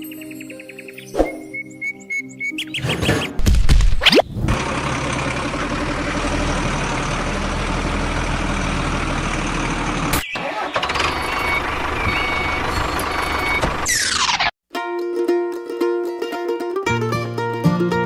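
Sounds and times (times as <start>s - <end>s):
engine running: 4.2s - 14.4s.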